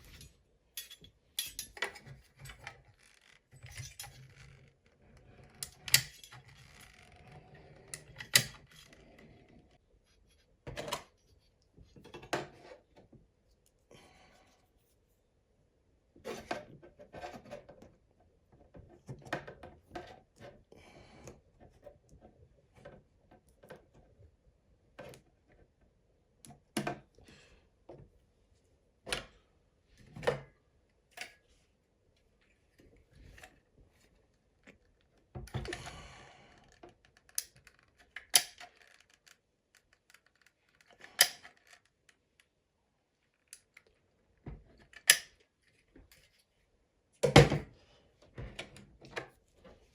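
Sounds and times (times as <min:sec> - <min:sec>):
clicks and knocks of small objects: 0:36.7 - 0:42.6.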